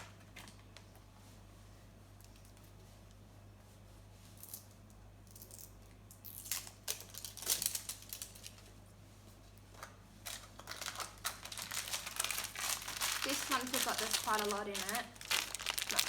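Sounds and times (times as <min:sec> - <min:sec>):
plastic packaging crinkling: 0:06.3 - 0:08.8, 0:09.7 - 0:16.0.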